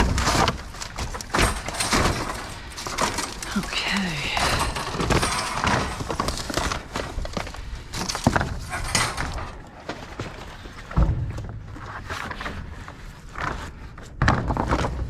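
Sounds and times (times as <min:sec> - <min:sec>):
scrap clattering in metal dumpster: 0:00.0 - 0:11.7.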